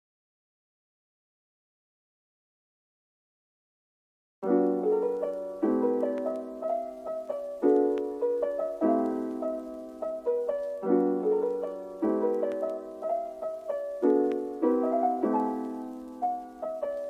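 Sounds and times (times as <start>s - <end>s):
soft piano chords: 4.4s - 17.0s.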